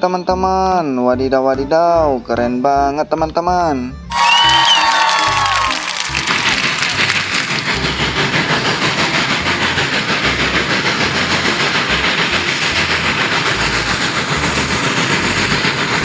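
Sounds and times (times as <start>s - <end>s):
toy steam train hissing and chuffing: 5.2s - 16.0s.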